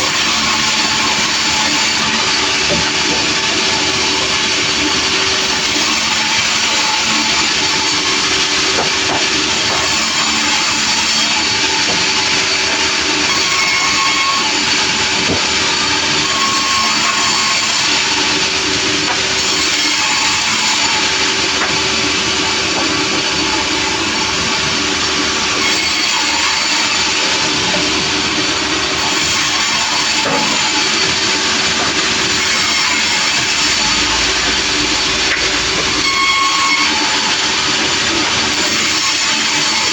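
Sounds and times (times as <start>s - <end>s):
engine drone: 33.4s - 38.5s.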